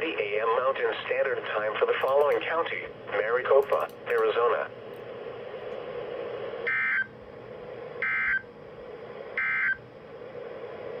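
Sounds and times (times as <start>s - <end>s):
radio hiss: 0.0s - 6.7s.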